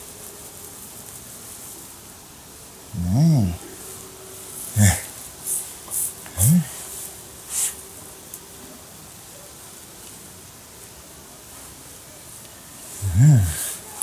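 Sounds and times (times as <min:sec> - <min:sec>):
weeds and soil rustling: 0:00.0 - 0:14.0
man humming briefly: 0:03.0 - 0:03.8, 0:04.7 - 0:05.2, 0:06.3 - 0:06.8, 0:13.0 - 0:14.0.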